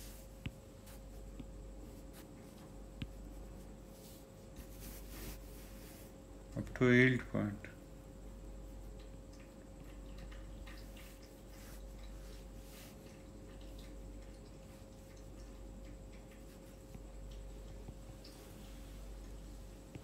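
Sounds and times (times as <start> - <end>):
electrical hum: 0.0 - 20.0
faint light ticks and clicks: 8.7 - 20.0.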